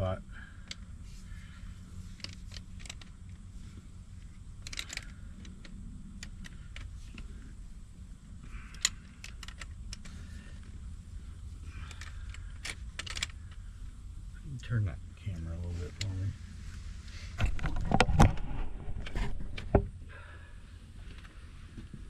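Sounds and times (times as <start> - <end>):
low engine drone: 0.0 - 22.0
metallic clicks and clinks: 4.6 - 7.2, 11.8 - 13.6.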